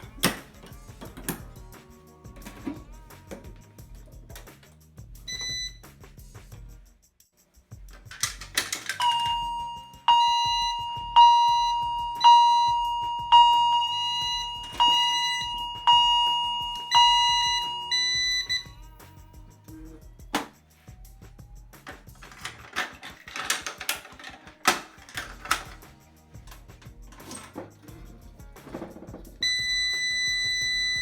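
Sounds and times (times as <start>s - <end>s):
short beep: 5.3s - 5.8s, 9.0s - 18.8s, 29.4s - 31.0s
steady electronic alarm tone: 5.3s - 5.8s, 9.0s - 19.0s, 29.4s - 31.0s
chime-like sounder strikes: 9.0s - 18.9s.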